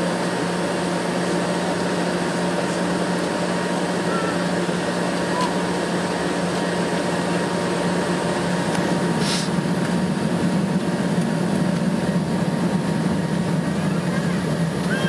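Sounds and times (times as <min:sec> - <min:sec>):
airliner engine hum: 0:00.0 - 0:15.0
brief hiss: 0:09.2 - 0:09.5.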